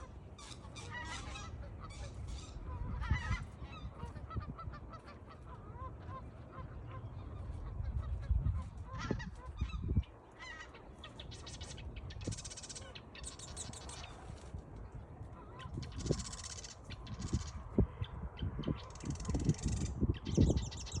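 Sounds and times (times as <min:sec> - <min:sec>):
birds giving harsh raspy calls: 0:00.0 - 0:14.2, 0:15.4 - 0:21.0
wind rumble on microphone: 0:00.0 - 0:21.0.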